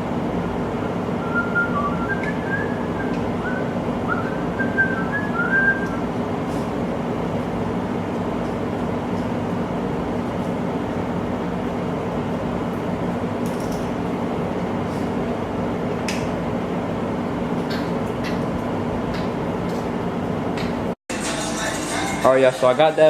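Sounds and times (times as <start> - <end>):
steady background hum: 0.0 - 23.0
short whistled notes: 1.2 - 6.0.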